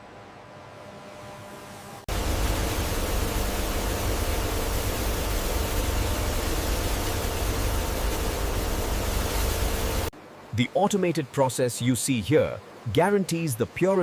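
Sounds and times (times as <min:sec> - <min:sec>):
factory machinery noise: 0:00.6 - 0:10.1.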